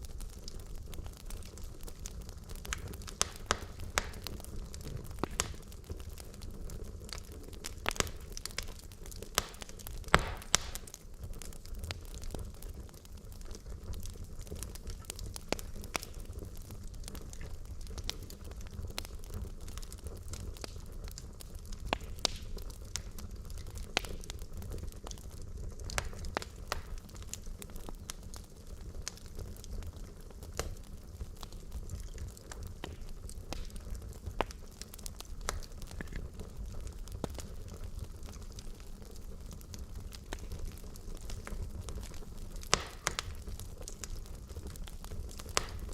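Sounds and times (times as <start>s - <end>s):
low rumble of flame: 0.0s - 45.9s
wood fire crackling and popping: 0.0s - 45.9s.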